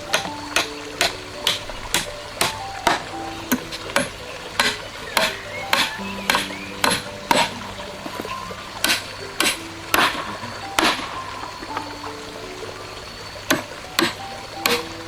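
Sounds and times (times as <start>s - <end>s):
soft background music: 0.0s - 15.0s
sharp knocks: 0.1s - 7.6s, 8.3s - 11.2s.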